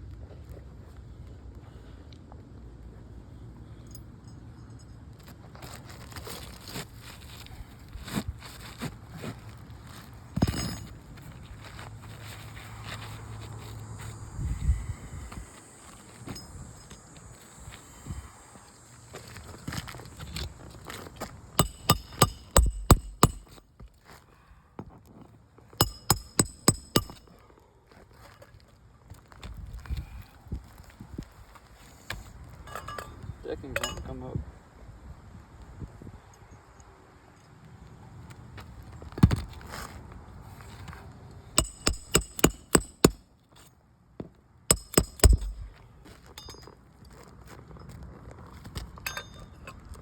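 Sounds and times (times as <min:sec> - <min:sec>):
hammer striking metal: 0:21.6 - 0:23.6, 0:25.8 - 0:27.2, 0:41.6 - 0:43.2, 0:44.7 - 0:45.7.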